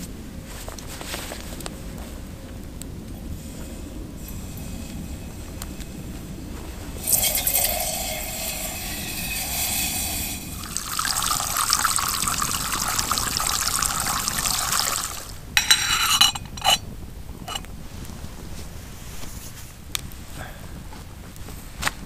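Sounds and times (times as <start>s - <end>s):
water pouring into a pot: 6.8s - 15.4s
metal pot clinking: 7.0s - 16.8s.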